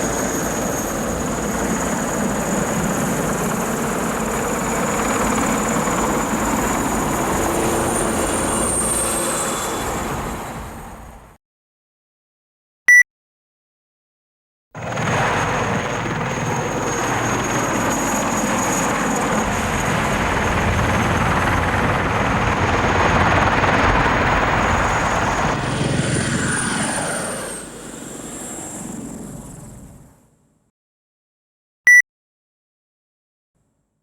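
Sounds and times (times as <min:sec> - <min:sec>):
helicopter rotor chop: 0:00.0 - 0:11.3, 0:14.8 - 0:30.1.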